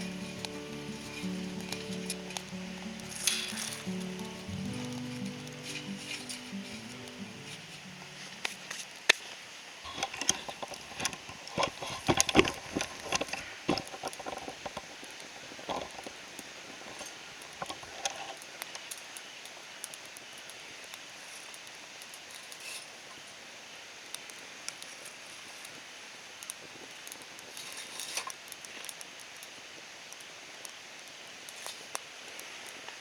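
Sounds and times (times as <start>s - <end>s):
faint outdoor hush: 0.0s - 13.9s.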